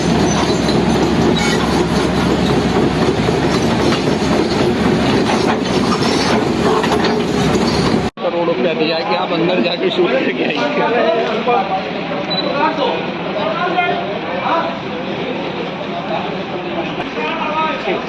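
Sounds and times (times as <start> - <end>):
heavy diesel machinery rumble: 0.0 - 8.1.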